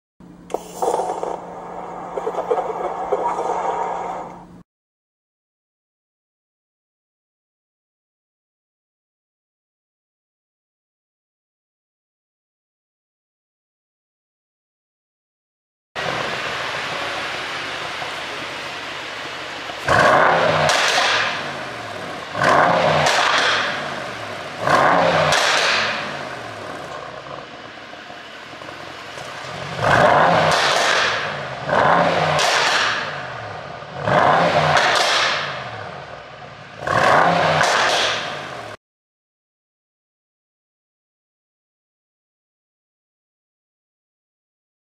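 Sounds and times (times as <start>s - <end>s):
car engine idling and revving: 16.0s - 38.8s
exhaust pops and crackles: 19.7s - 27.0s, 28.6s - 31.4s.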